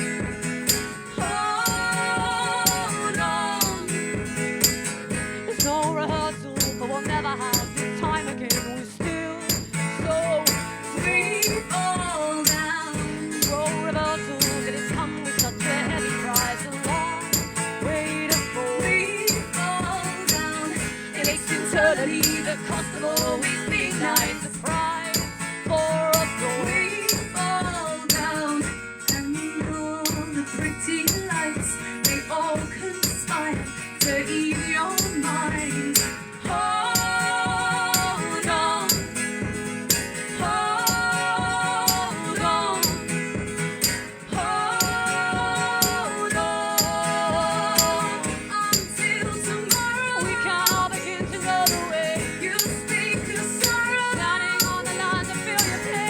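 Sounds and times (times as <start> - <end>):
rattling hand percussion: 0.0 - 6.0, 6.6 - 8.9, 9.5 - 28.5, 29.1 - 29.4, 30.1 - 30.4, 31.1 - 32.4, 33.0 - 56.0
band song with steady beat: 30.1 - 56.0.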